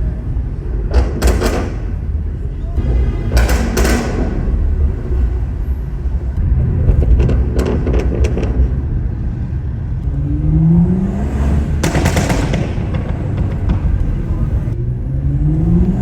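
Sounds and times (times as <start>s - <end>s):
exhaust cracks: 0.0s - 14.8s
car engine rumbling: 0.0s - 16.0s
loud rushing burst: 10.6s - 14.8s.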